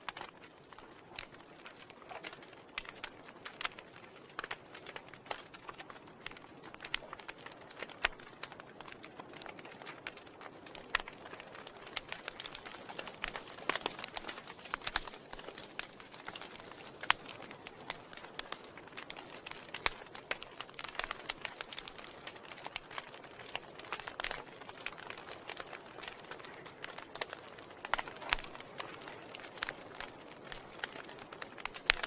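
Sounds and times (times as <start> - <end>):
soft steady hiss: 0.0 - 32.0
wood fire crackling and popping: 0.0 - 32.0.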